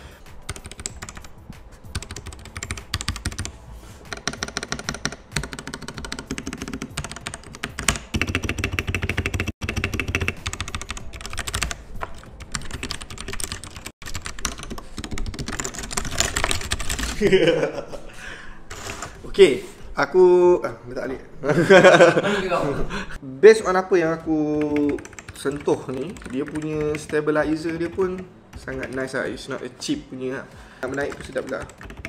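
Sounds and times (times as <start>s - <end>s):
mechanical keyboard typing: 0.4s - 1.3s, 1.9s - 3.5s, 4.1s - 17.2s, 24.5s - 29.6s, 30.8s - 32.0s.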